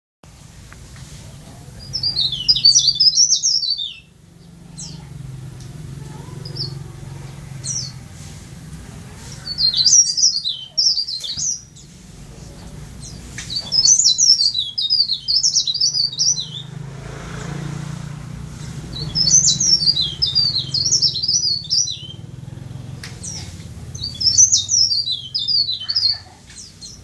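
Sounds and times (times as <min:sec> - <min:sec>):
bird twittering: 0:01.8 - 0:08.0, 0:09.3 - 0:27.0
short high bird calls: 0:18.6 - 0:22.3, 0:23.1 - 0:27.0.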